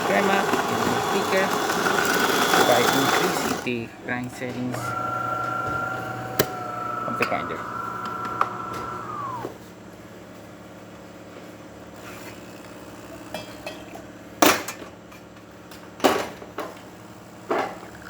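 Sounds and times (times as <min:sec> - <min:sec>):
espresso machine humming: 0:00.0 - 0:09.7.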